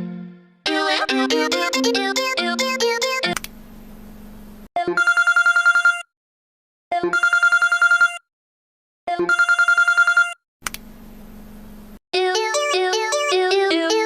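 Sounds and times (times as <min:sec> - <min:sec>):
telephone ringing: 0:05.0 - 0:06.1, 0:07.1 - 0:08.2, 0:09.2 - 0:10.4.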